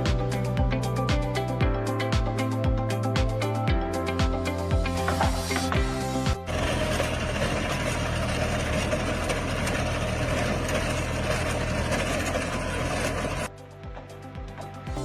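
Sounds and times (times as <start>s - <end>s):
engine running: 0.0s - 15.0s
dense mechanical noise: 5.0s - 13.5s.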